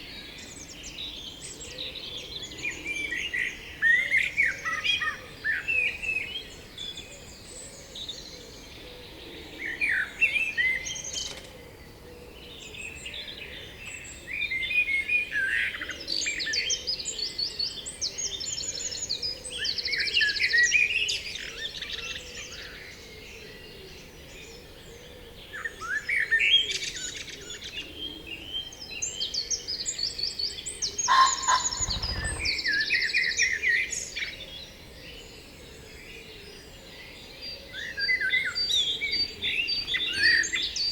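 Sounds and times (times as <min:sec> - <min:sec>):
songbirds singing: 0:00.0 - 0:40.9.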